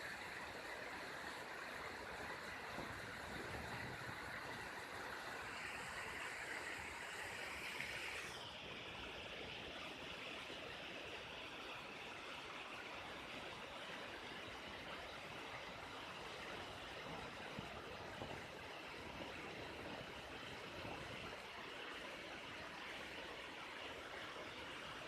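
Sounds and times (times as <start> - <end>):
water rushing in a stream: 0.0 - 25.0.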